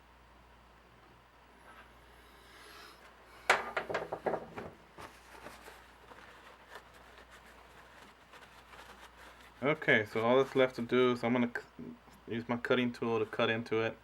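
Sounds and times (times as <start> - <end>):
metal clicks and knocks: 3.5 - 4.7.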